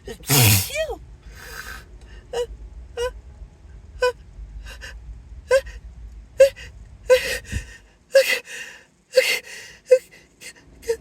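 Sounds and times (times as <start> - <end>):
person gasping before sneeze: 0.3 - 0.8.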